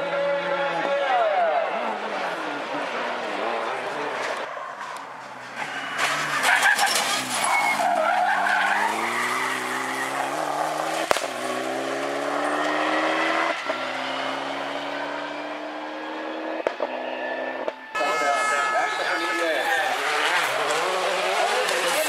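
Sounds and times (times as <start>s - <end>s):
rally car engine accelerating: 1.8s - 17.8s, 19.8s - 22.0s
tyre squeal: 4.5s - 11.0s
gearshift crack: 8.7s - 12.8s.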